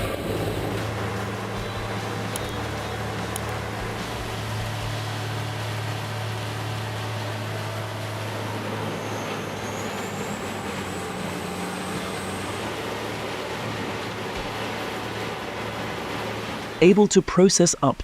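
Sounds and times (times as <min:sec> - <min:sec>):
faint high whine: 0:00.0 - 0:08.0
deep engine drone: 0:00.0 - 0:17.1.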